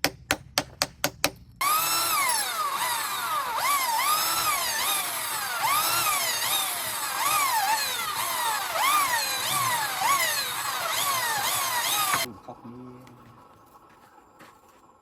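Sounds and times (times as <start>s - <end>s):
power tool motor whining: 1.6s - 12.3s.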